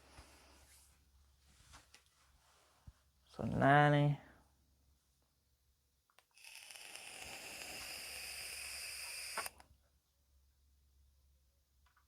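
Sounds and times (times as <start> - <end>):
valve click: 6.2 - 9.7.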